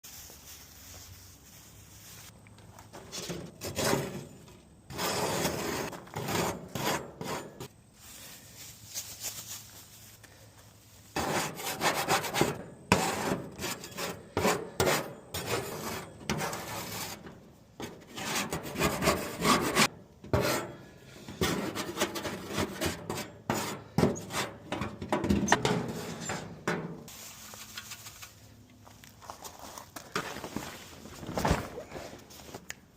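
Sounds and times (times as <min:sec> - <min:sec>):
brush scraping grill grate: 0:02.9 - 0:10.0, 0:11.1 - 0:28.4.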